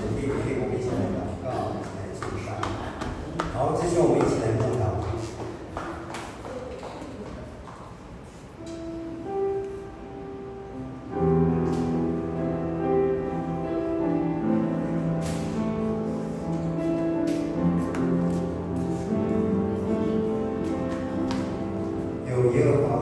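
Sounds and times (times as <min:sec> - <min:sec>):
instrumental background music: 0:11.2 - 0:23.0.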